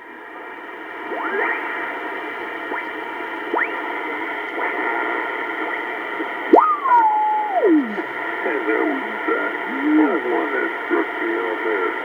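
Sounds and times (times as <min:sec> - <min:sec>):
radio hiss and static: 0:00.0 - 0:12.0
rising heterodyne whistles: 0:06.6 - 0:08.1.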